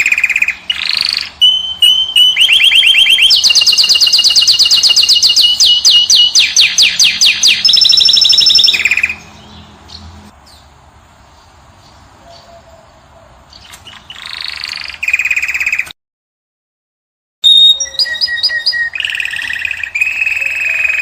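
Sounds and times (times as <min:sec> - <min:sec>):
finch singing trills: 0:00.0 - 0:10.6, 0:13.5 - 0:15.9, 0:17.4 - 0:21.0.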